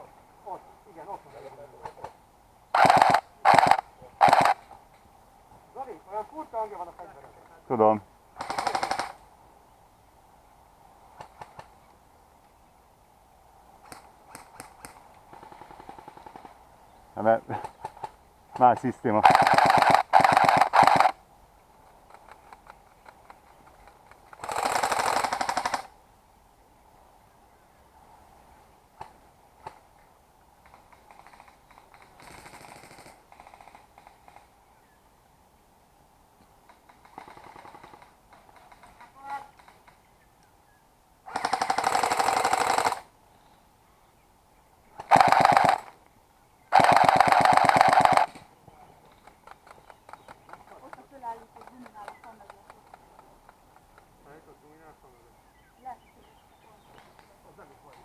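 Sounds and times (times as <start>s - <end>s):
airsoft gun firing bursts: 2.7s - 4.6s, 8.4s - 9.2s, 19.2s - 21.2s, 24.4s - 25.9s, 32.0s - 33.7s, 41.3s - 43.1s, 45.0s - 45.9s, 46.7s - 48.4s.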